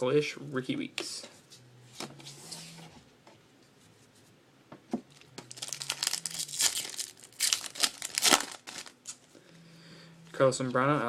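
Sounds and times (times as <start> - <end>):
wrapper tearing and crinkling: 5.1 - 9.3.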